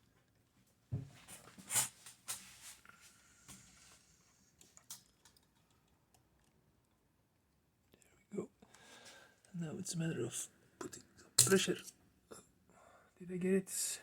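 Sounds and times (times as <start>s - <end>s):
metal rod clicking and scraping: 10.8s - 11.9s.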